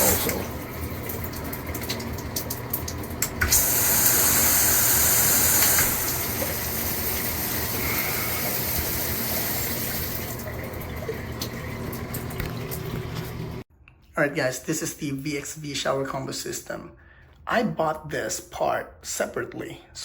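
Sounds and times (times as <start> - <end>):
shower water spraying: 0.0 - 13.6.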